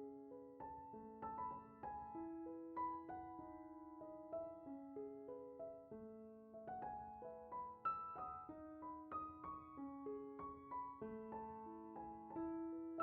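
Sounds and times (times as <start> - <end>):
soft slow piano music: 0.0 - 13.0.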